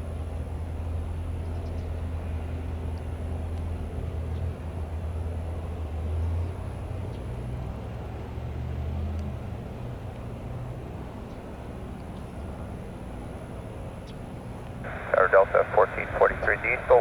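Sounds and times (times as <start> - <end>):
jet engines running: 12.3 - 17.0.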